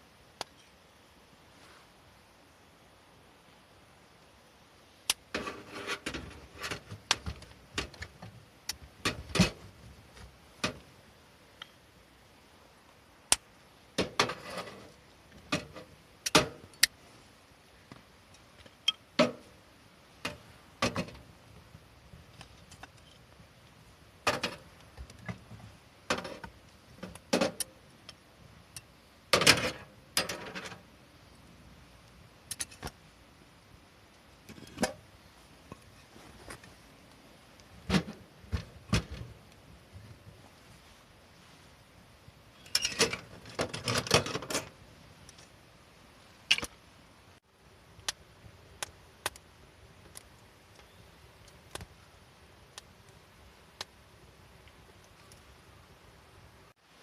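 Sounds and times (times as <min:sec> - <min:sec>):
camp gear clinking and rustling: 0:14.0 - 0:16.9, 0:24.3 - 0:27.7, 0:29.4 - 0:30.9, 0:35.6 - 0:36.9, 0:42.6 - 0:45.6.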